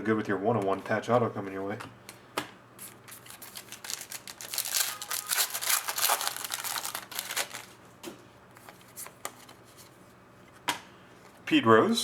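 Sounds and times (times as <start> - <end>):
card packs crinkling and rustling: 2.9 - 7.8.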